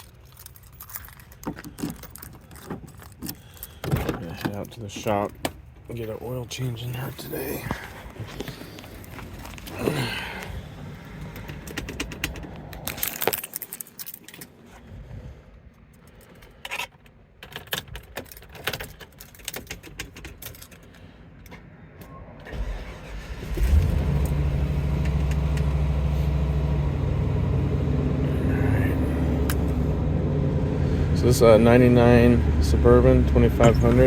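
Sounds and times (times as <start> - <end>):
keys jangling: 0.0 - 4.7, 11.5 - 14.5
engine cranking and idling: 0.0 - 14.2, 22.4 - 34.0.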